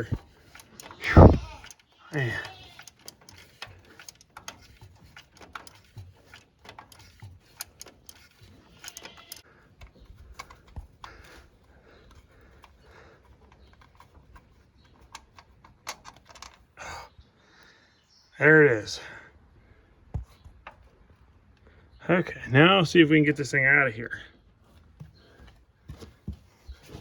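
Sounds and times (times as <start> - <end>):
socket wrench clicking: 0.0 - 16.6.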